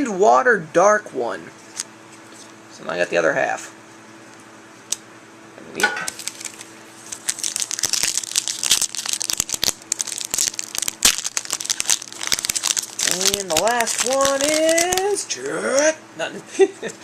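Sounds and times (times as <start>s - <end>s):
foil wrapper crinkling: 6.1s - 15.5s.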